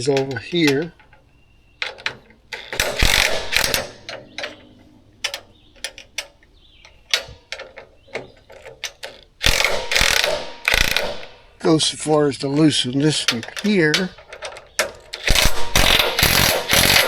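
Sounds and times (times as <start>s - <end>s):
ratchet wrench clicking: 1.8s - 4.6s, 5.2s - 11.5s, 13.3s - 17.0s
metal clinks: 13.1s - 17.0s.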